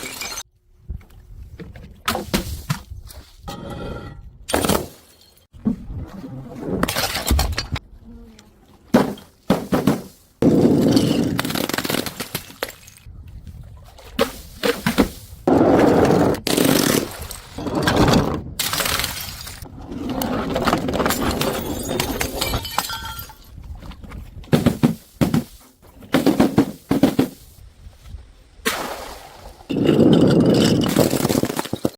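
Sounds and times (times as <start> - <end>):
glass bottles smashing: 0.0 - 0.4, 18.6 - 19.6, 21.0 - 23.5.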